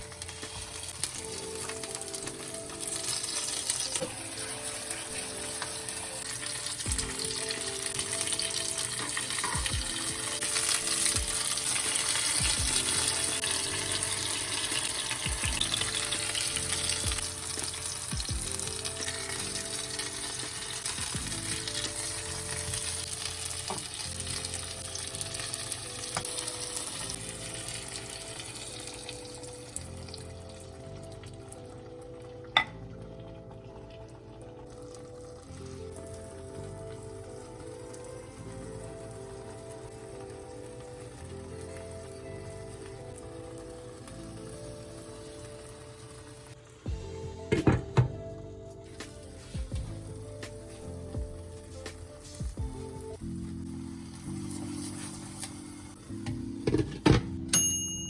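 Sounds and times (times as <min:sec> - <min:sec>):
food sizzling in frying pan: 0:00.0 - 0:47.4, 0:48.8 - 0:57.4
soft background music: 0:00.0 - 0:58.0.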